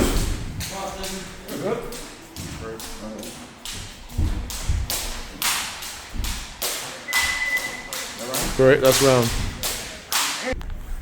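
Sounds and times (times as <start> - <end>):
electronic timer beep: 7.1 - 7.9.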